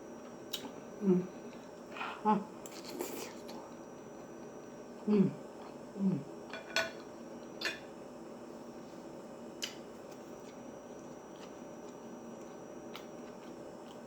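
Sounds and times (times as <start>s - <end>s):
soft chewing: 0.2s - 6.3s, 9.6s - 14.0s.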